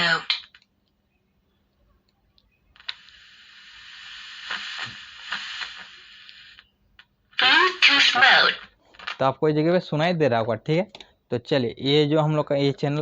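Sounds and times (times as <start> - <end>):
loudspeaker hiss with crackles: 0.0 - 0.6, 2.6 - 10.0.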